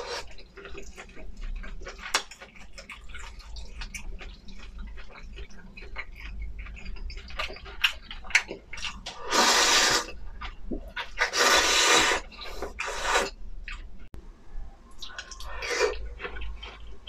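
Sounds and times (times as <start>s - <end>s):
wet chewing: 0.0s - 14.0s, 15.0s - 17.0s
noodles being slurped: 9.2s - 10.2s, 11.0s - 13.4s.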